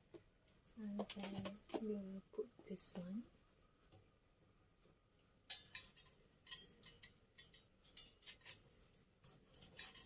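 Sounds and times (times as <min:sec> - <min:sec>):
small parts clicking: 0:04.8 - 0:10.0.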